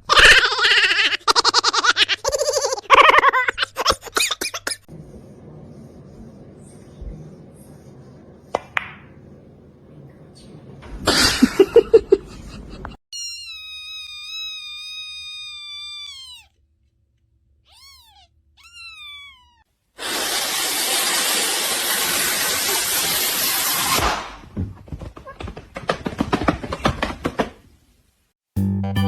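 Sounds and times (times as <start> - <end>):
cat meowing: 13.2 - 16.6, 17.7 - 19.6
loud even hissing noise: 20.0 - 24.1.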